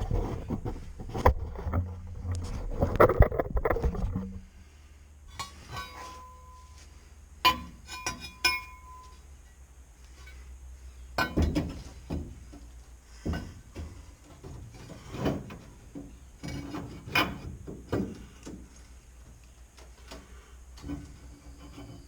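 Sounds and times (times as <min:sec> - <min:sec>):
irregular knocks and clunks: 0:00.0 - 0:04.5, 0:11.2 - 0:22.0
low steady hum: 0:00.0 - 0:22.0.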